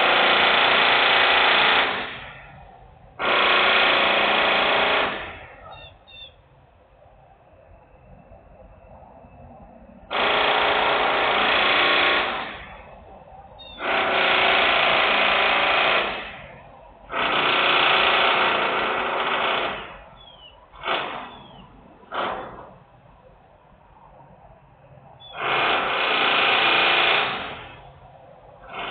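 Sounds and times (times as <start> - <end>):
loud industrial machine noise: 0.0 - 6.8, 8.1 - 28.9.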